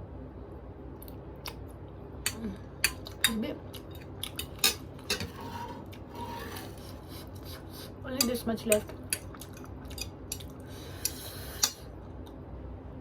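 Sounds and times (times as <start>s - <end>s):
utensils clinking against a dish: 2.8s - 7.5s.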